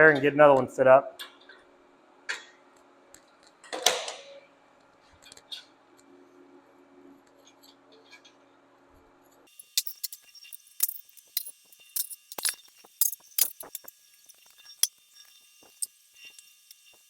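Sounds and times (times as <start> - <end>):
metal parts clinking: 9.5 - 17.0.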